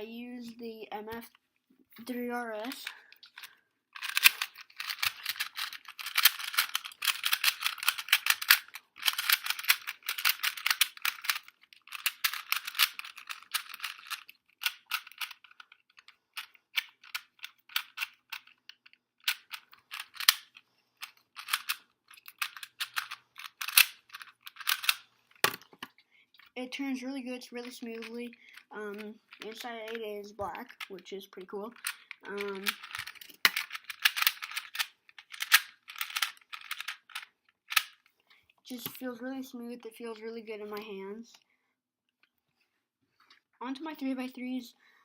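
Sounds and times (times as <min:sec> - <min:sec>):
puzzle cube layers clicking: 0:02.0 - 0:25.6, 0:31.7 - 0:38.0.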